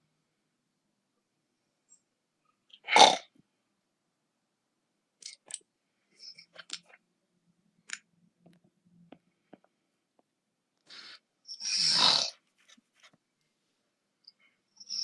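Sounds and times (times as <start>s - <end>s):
faint clicks and smacks: 6.3s - 7.1s, 7.8s - 10.9s
snoring breath drone: 10.9s - 12.3s
loud snoring snort: 11.5s - 12.4s.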